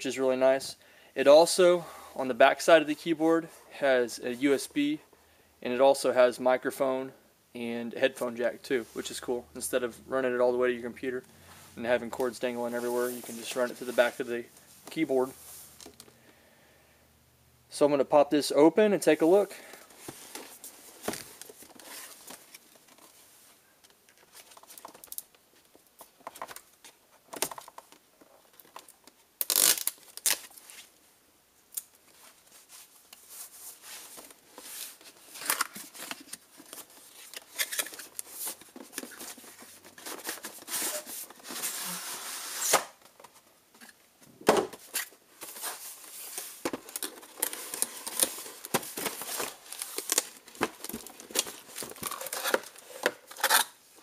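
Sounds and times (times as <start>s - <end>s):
packaging tearing and crinkling: 29.4s - 30.6s, 35.2s - 39.2s, 46.8s - 53.8s.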